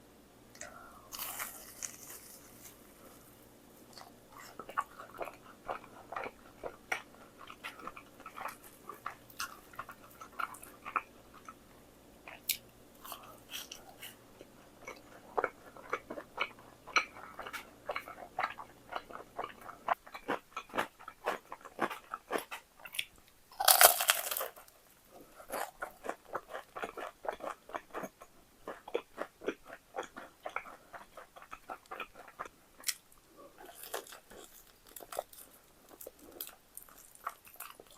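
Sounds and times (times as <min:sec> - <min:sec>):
faint low hum: 0:00.0 - 0:37.9
crispy chicken crunching: 0:01.1 - 0:03.3, 0:23.6 - 0:24.7, 0:33.6 - 0:37.9.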